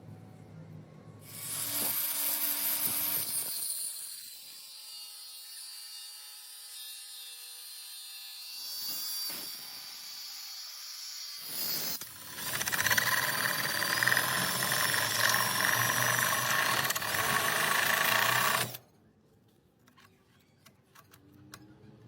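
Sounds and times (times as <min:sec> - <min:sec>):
power drill motor whine: 0:12.2 - 0:18.8.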